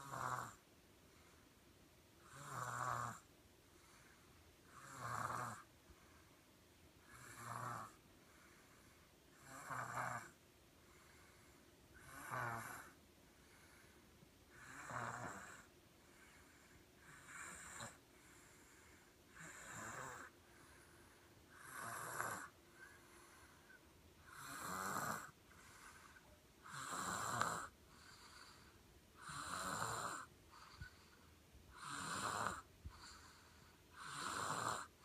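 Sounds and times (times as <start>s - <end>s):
baby snoring: 0.0s - 0.6s, 2.2s - 3.3s, 4.0s - 5.7s, 7.0s - 8.0s, 8.6s - 10.4s, 11.1s - 13.0s, 13.6s - 35.0s
faint breaths: 0.9s - 1.8s, 3.6s - 4.7s, 5.6s - 7.2s, 7.9s - 9.4s, 10.3s - 12.1s, 12.7s - 14.8s, 15.6s - 26.8s, 27.4s - 29.6s, 30.2s - 35.0s.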